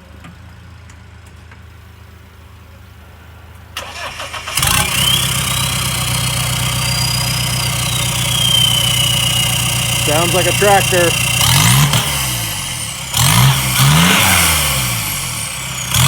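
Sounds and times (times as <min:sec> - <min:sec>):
diesel engine idling loud: 0:01.7 - 0:16.0
diesel engine starter cranking: 0:03.8 - 0:16.0
turbo whistle: 0:06.8 - 0:10.8.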